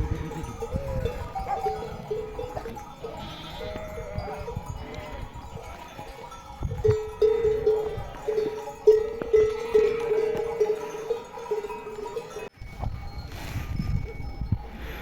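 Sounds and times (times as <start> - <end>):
sheep bleating: 3.0 - 5.4.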